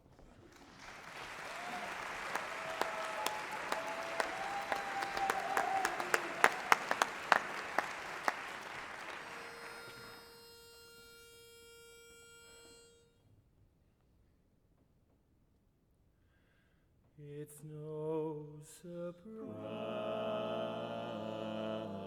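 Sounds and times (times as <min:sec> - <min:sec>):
loud close claps: 0:00.0 - 0:10.4
audience applauding and cheering: 0:00.2 - 0:10.4
pitch pipe note: 0:09.2 - 0:13.1.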